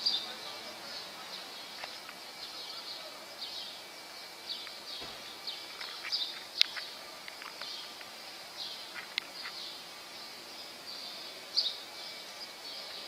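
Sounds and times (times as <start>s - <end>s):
outdoor background noise: 0.0s - 13.0s
small birds chirping: 0.0s - 13.0s.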